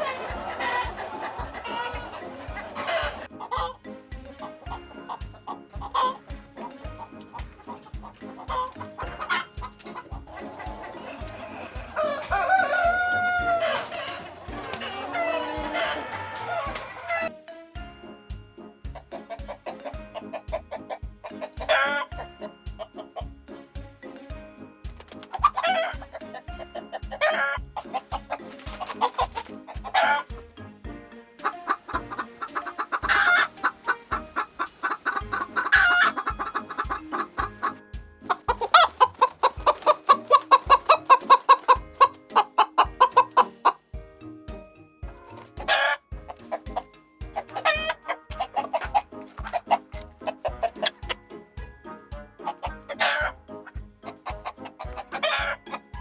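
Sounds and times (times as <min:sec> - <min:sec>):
chickens clucking: 0:00.0 - 0:17.3, 0:18.6 - 0:23.6, 0:24.6 - 0:43.8, 0:45.1 - 0:56.0
background music with steady beat: 0:00.0 - 0:56.0
rooster crowing: 0:11.8 - 0:17.3.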